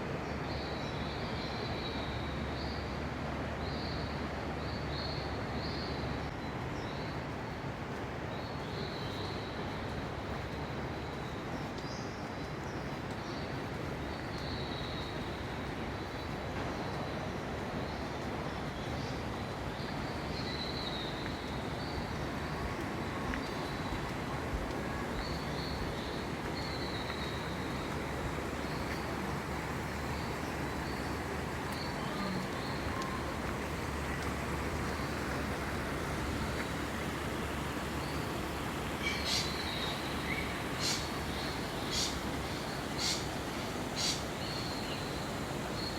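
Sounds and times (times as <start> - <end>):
low rumble and hiss: 0.0 - 45.9
low rush of noise: 17.4 - 45.9.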